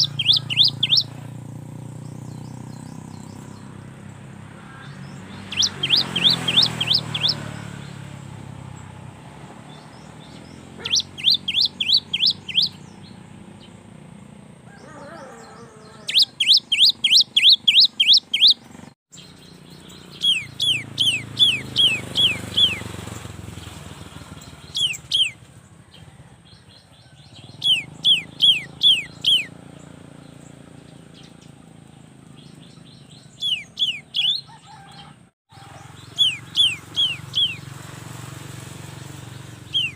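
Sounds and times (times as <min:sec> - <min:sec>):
bird singing high notes: 0:00.0 - 0:01.2, 0:04.9 - 0:08.0, 0:10.1 - 0:13.2, 0:16.0 - 0:18.7, 0:19.5 - 0:23.0, 0:24.6 - 0:25.4, 0:27.5 - 0:30.5, 0:32.4 - 0:34.5, 0:35.9 - 0:37.7, 0:39.6 - 0:39.9.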